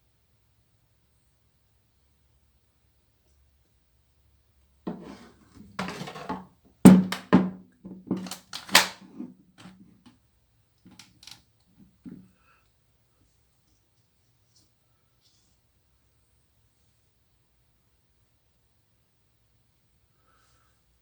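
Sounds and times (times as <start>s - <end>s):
hard objects knocking and clunking: 4.9s - 9.9s, 10.9s - 11.4s, 12.0s - 12.2s.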